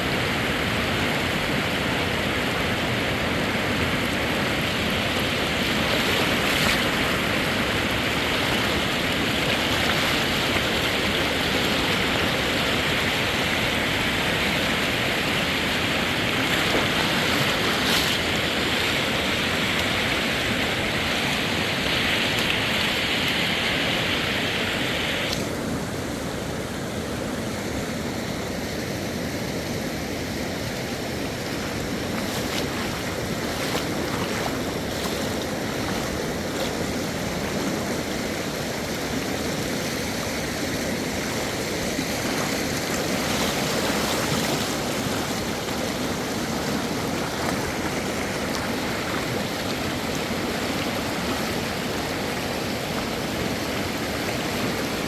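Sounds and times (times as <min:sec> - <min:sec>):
river rushing: 0:00.0 - 0:55.0.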